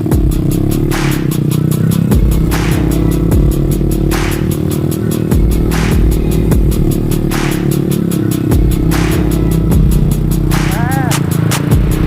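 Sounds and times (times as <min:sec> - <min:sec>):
electronic music with steady beat: 0:00.0 - 0:12.0.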